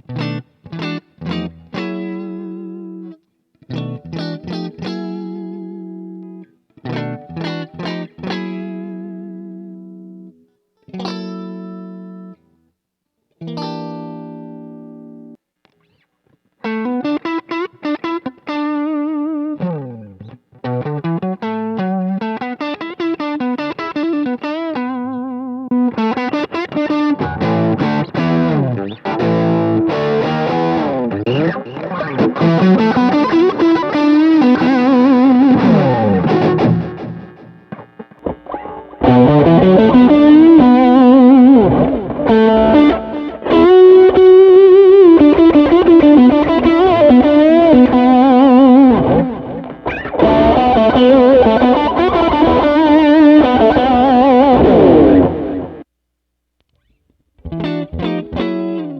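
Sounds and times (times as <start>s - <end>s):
distorted electric guitar: 16.7s - 55.9s, 56.8s - 58.9s.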